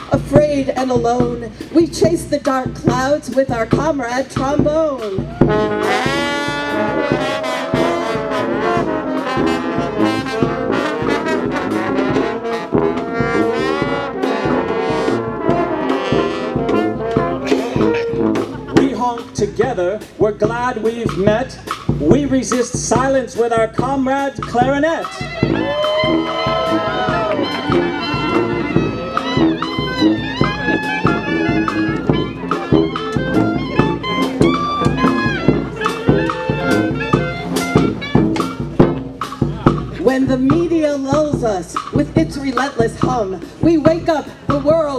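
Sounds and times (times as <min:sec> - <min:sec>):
trombones playing brass phrase: 0:05.2 - 0:19.6, 0:25.0 - 0:39.4.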